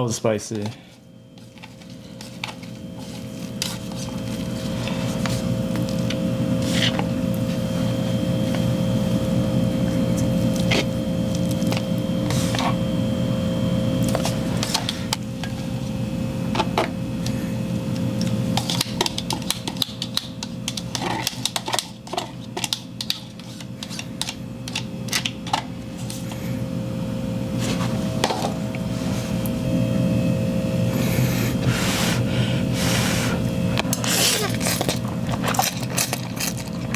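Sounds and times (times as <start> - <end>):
steady low hum: 0.0 - 36.9
chewing and slurping noodles: 33.8 - 36.9.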